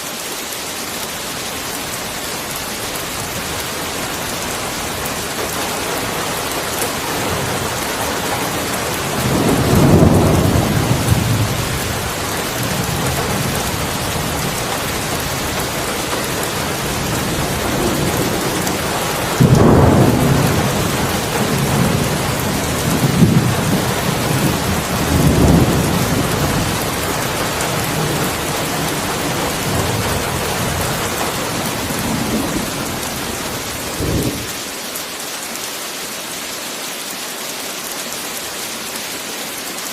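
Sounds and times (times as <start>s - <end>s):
heavy rain: 0.0s - 39.9s
rolling thunder: 6.9s - 34.6s.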